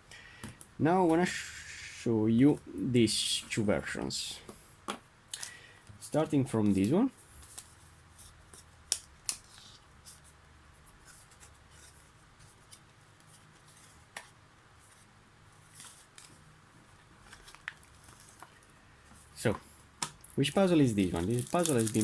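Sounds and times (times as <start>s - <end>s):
plastic puzzle rustling: 21.0s - 22.0s.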